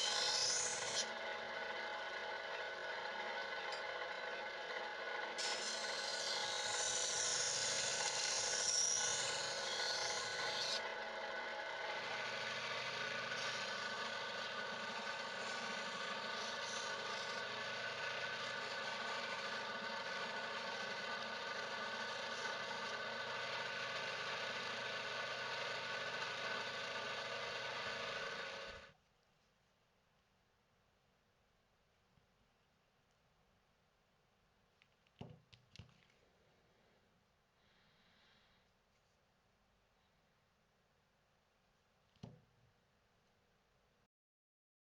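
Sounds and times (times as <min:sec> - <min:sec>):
angle grinder running: 0:00.0 - 0:28.9
grinder disc grinding steel: 0:00.0 - 0:28.9.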